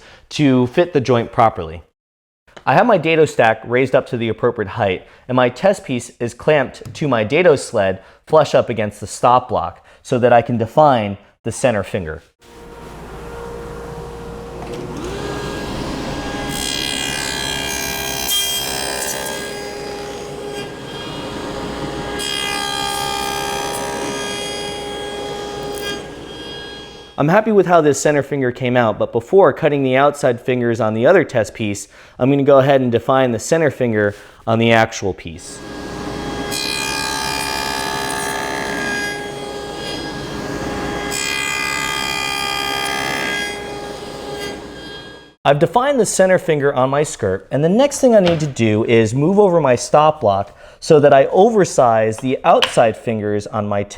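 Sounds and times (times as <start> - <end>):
table saw cutting wood: 12.4 - 27.2, 35.6 - 45.4.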